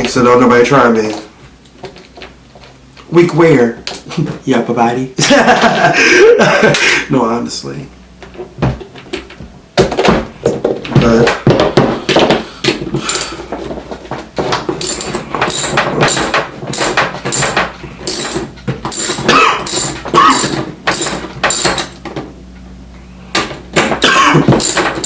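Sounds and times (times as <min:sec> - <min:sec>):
wrench clinking on metal: 0:14.8 - 0:22.0, 0:24.6 - 0:25.0.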